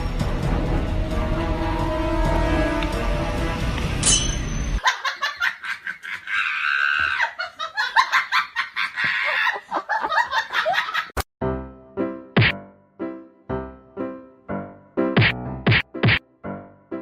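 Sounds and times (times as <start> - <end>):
people laughing hard: 4.8 - 11.2.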